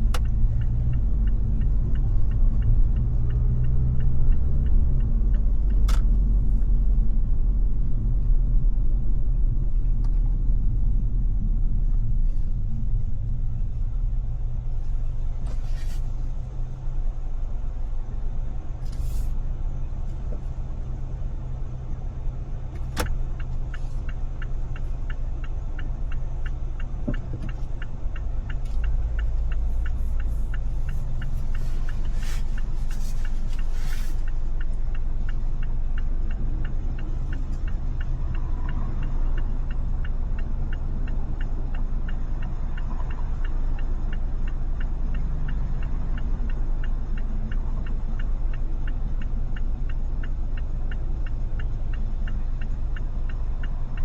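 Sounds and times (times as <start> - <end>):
even ticking: 0.0 - 5.9
car engine and road noise: 0.0 - 54.0.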